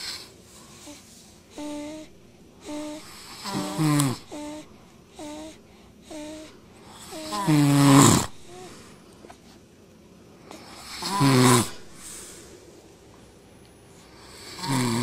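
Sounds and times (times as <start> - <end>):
baby wheezy snores: 0.0 - 8.8, 10.4 - 12.3, 14.0 - 15.0
man snoring loudly: 1.6 - 5.5, 6.1 - 8.4, 10.7 - 11.9, 14.2 - 15.0.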